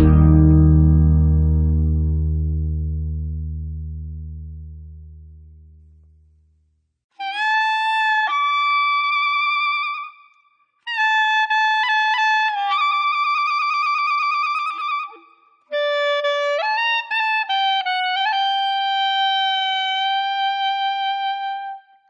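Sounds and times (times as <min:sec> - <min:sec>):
solo wind instrument melody: 0:00.0 - 0:03.0, 0:10.9 - 0:21.9.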